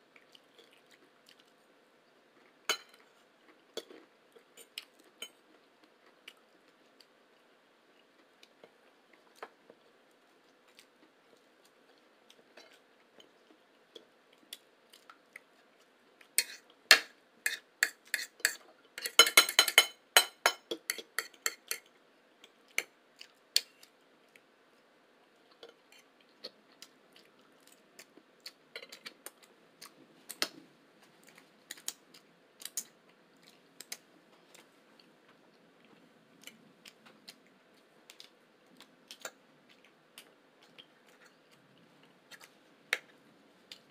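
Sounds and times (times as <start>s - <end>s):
silverware clinking on plates: 2.7s - 3.0s, 16.4s - 21.9s.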